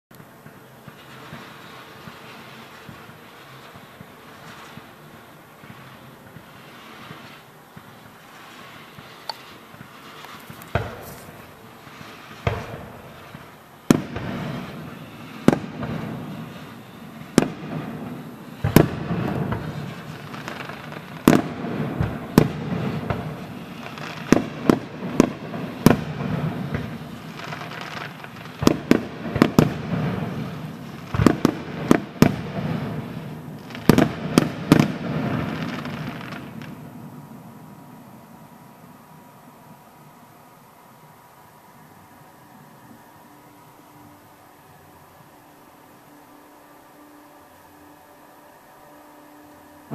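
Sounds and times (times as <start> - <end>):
firework bangs: 0.1 - 39.0.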